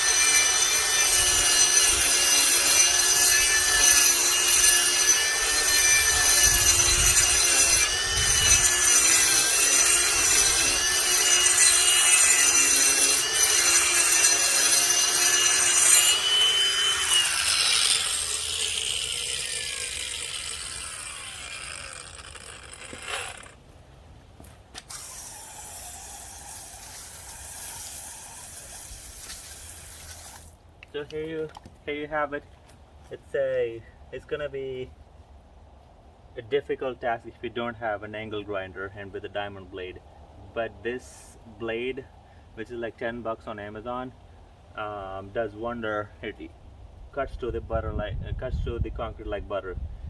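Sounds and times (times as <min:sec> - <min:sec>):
angle grinder grinding concrete: 0:00.0 - 0:23.6, 0:24.8 - 0:30.6.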